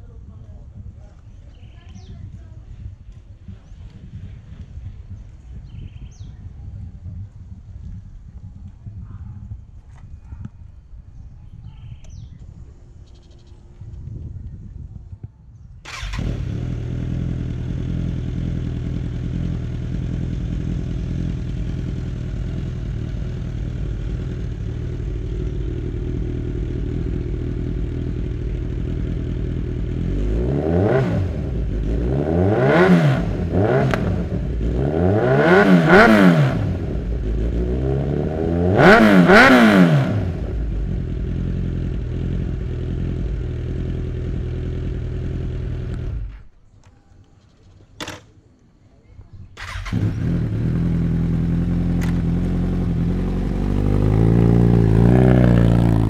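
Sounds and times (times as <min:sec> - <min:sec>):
motorcycle engine idling: 0:15.8 - 0:46.5, 0:49.6 - 0:56.0
engine revving: 0:15.9 - 0:46.4, 0:49.6 - 0:56.0.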